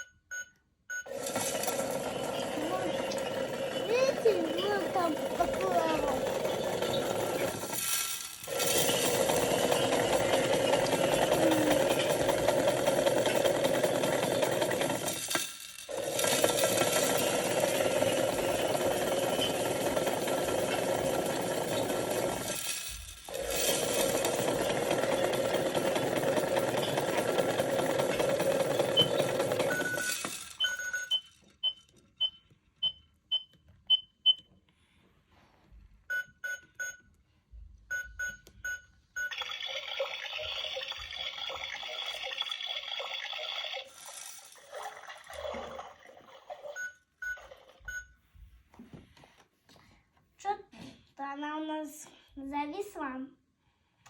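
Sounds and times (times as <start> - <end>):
toy washing machine motor humming: 1.1 - 31.7, 39.2 - 48.1
water trickling: 44.6 - 46.8.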